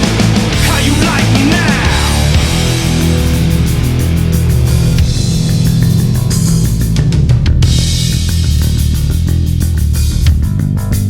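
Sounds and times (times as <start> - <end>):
heavy rock music: 0.0 - 11.0.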